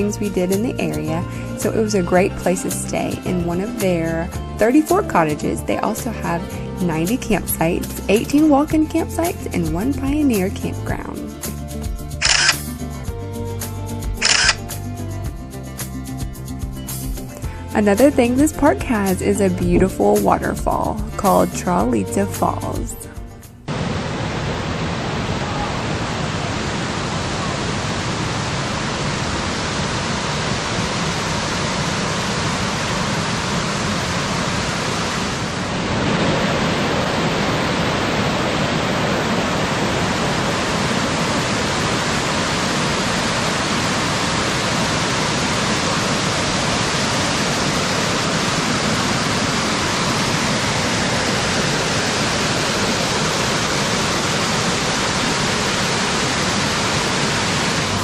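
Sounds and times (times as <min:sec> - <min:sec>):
waterfall rushing: 0:23.7 - 0:58.0.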